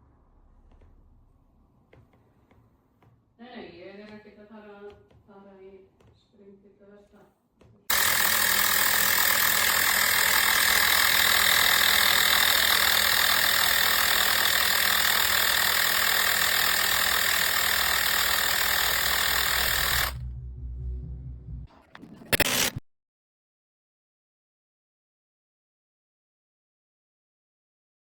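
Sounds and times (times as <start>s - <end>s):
air compressor running: 7.9s - 20.2s
low rumble: 20.2s - 21.7s.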